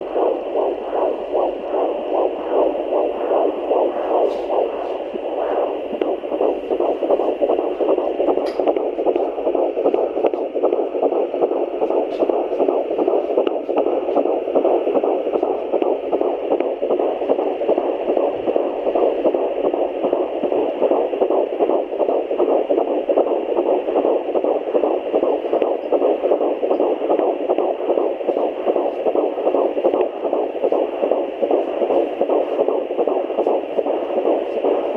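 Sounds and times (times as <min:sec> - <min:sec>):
fetal heartbeat through doppler: 0:00.0 - 0:34.9.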